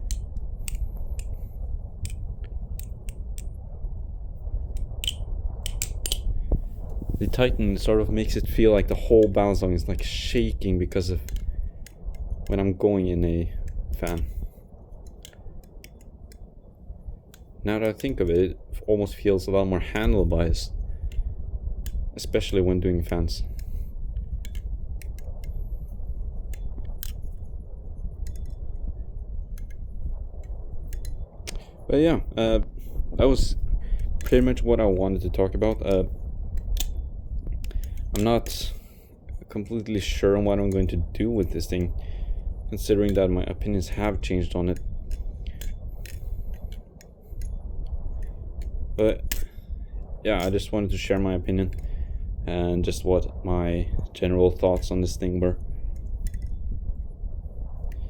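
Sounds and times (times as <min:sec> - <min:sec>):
butterfly knife handles clicking: 0:00.0 - 0:03.6, 0:04.7 - 0:06.4, 0:07.2 - 0:16.6, 0:17.2 - 0:18.4, 0:20.0 - 0:31.8, 0:32.8 - 0:39.0, 0:42.8 - 0:49.6, 0:50.3 - 0:51.9, 0:54.6 - 0:55.3, 0:55.9 - 0:56.6, 0:57.8 - 0:58.0
low steady hum: 0:00.0 - 0:58.0.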